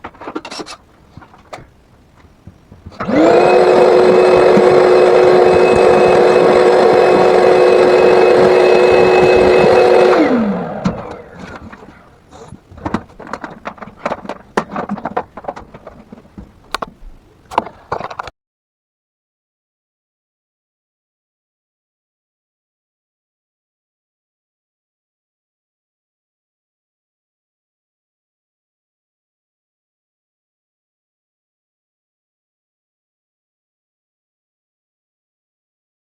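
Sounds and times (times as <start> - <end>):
vacuum cleaner running: 2.8 - 12.5
knocks and clatter: 10.8 - 18.3.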